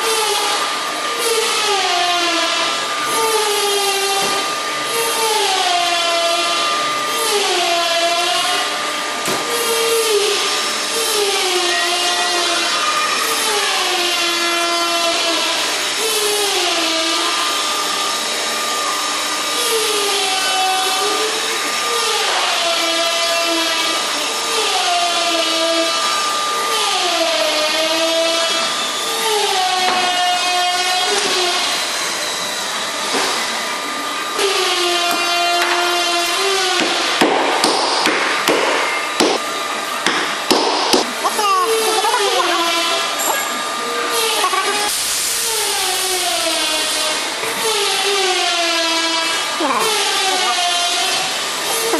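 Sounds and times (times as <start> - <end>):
electric motor whining: 0.0 - 51.9.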